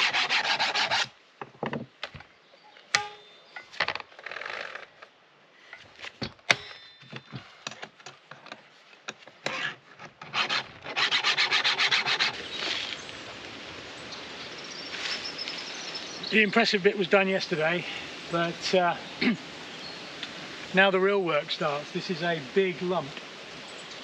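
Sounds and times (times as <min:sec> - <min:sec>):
brushing strokes: 0:00.0 - 0:01.1, 0:10.4 - 0:13.0.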